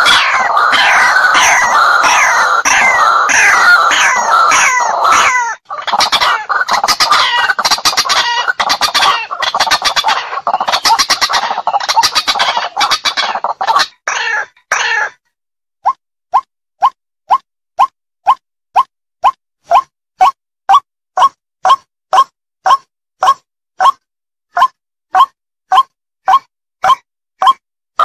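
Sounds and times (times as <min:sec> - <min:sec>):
waterhen harsh calls: 0:00.0 - 0:15.2.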